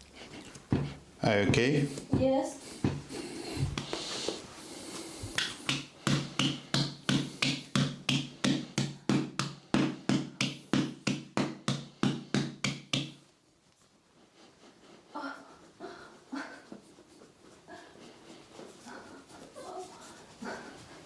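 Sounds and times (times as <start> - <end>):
percussive strikes on a body: 5.3 - 13.2.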